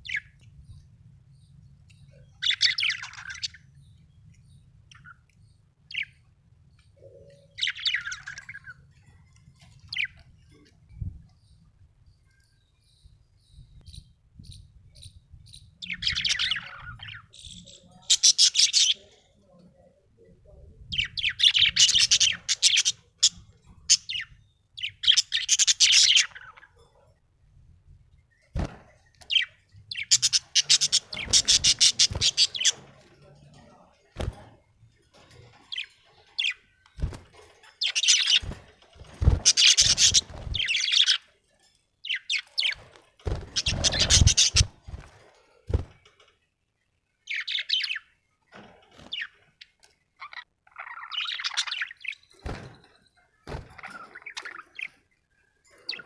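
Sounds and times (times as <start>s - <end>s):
budgerigar chirping and warbling: 29.4s - 32.8s, 43.6s - 44.8s, 50.2s - 52.3s.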